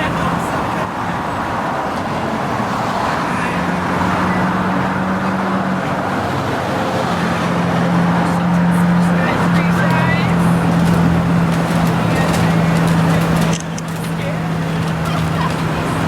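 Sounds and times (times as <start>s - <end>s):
low engine hum: 0.0s - 16.0s
passing cars rushing: 0.0s - 16.0s.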